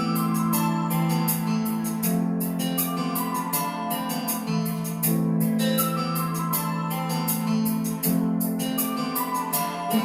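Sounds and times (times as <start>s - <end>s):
instrumental music with steady beat: 0.0s - 10.0s.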